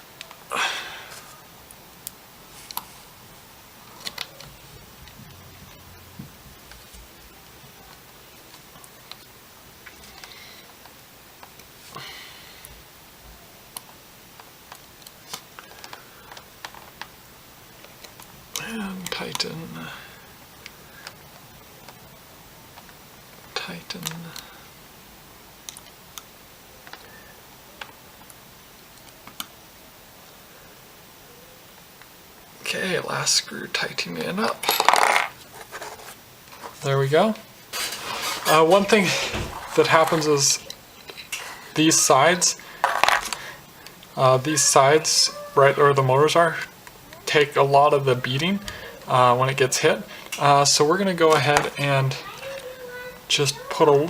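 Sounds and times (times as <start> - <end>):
scraping rustle: 34.8 - 36.9, 37.7 - 41.7.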